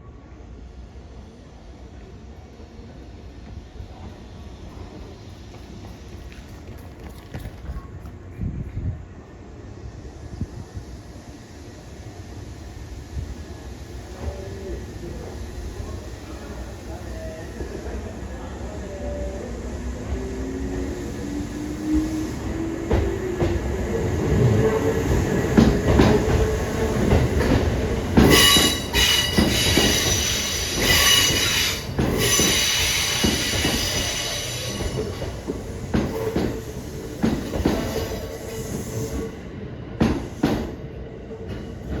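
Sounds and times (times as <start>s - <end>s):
train wheels clacking over rail joints: 25.5s - 38.2s
high wheel squeal: 28.3s - 35.1s.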